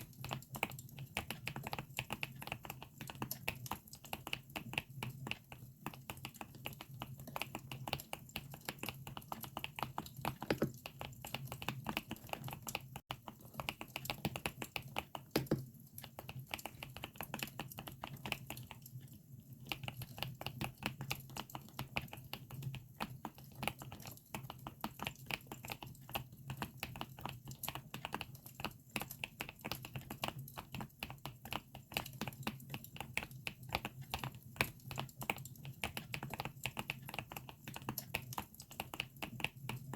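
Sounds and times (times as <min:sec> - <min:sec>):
mechanical keyboard typing: 0:00.0 - 0:19.0.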